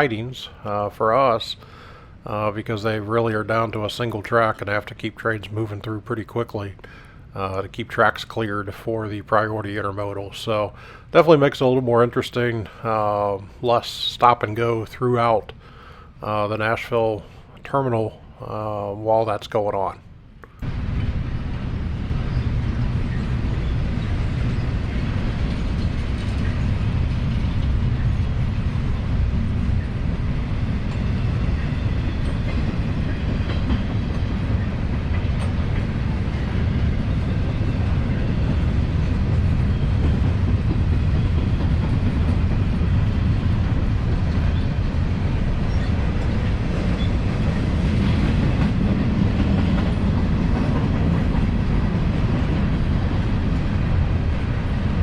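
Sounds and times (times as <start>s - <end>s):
freight train wheels rumbling: 0.0s - 17.2s, 20.6s - 55.0s
faint clickety-clack: 31.7s - 36.6s, 45.6s - 53.2s.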